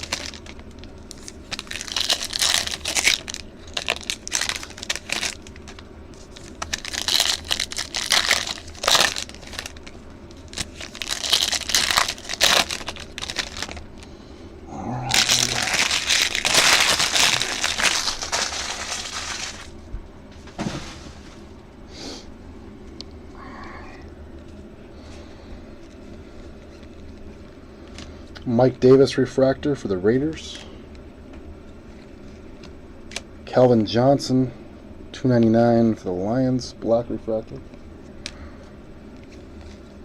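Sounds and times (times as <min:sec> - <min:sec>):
foil wrappers tearing and crinkling: 0:00.0 - 0:14.1, 0:15.1 - 0:19.7.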